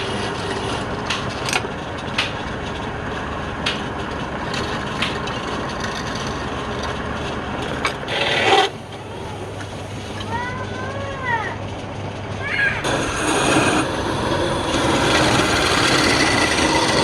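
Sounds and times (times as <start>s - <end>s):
wood lathe running: 0.0s - 1.2s, 8.1s - 10.4s, 12.8s - 17.0s.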